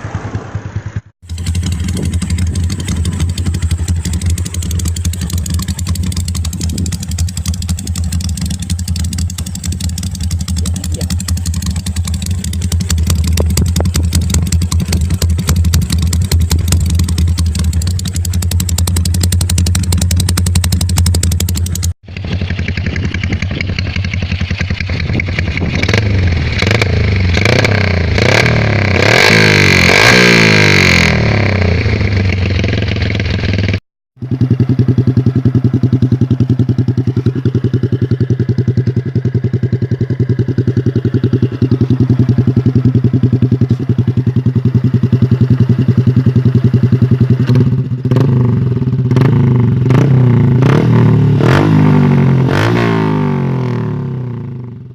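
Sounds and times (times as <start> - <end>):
small motorcycles revving: 0.0 - 54.7.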